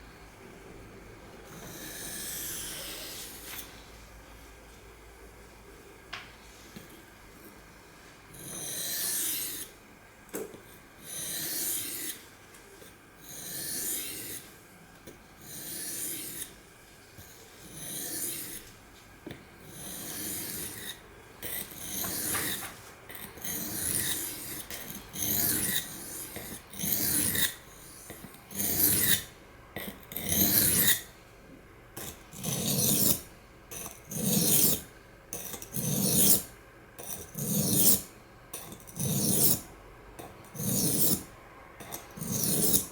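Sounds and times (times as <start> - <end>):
knife scraping on sharpening stone: 8.4 - 9.7, 11.0 - 12.2, 13.2 - 14.4, 15.4 - 16.5, 17.6 - 18.6, 19.6 - 31.0, 32.0 - 33.2, 33.8 - 39.6, 40.2 - 42.9.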